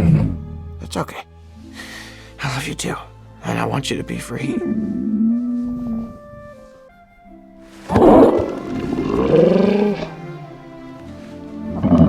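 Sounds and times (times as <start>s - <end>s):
soft orchestral music: 0.0s - 12.0s
dragon calling: 7.8s - 11.0s.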